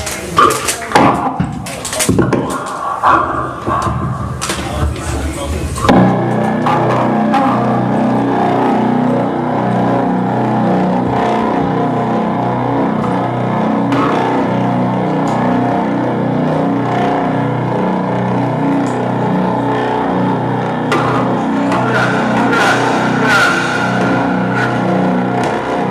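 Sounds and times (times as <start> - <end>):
cymbal crashes: 20.7 - 25.9.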